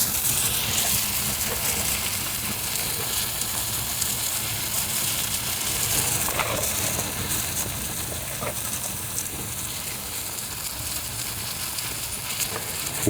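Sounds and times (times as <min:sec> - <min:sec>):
shrimp sizzling in a pan: 0:00.0 - 0:13.0.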